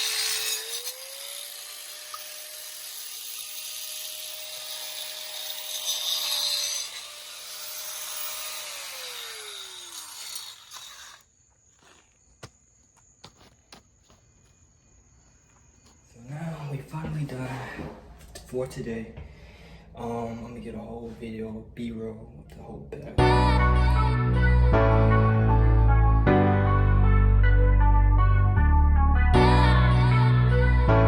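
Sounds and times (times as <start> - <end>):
power tool motor whine: 0.0 - 12.0.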